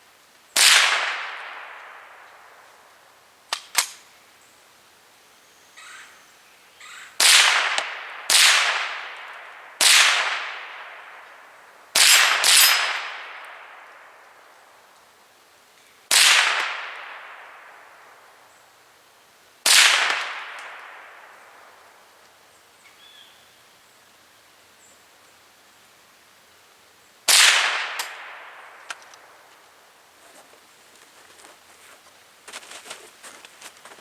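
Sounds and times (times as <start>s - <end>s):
rifle shots echoing: 0.6s - 2.6s, 7.2s - 14.1s, 16.1s - 18.1s, 19.6s - 21.8s, 27.3s - 29.5s.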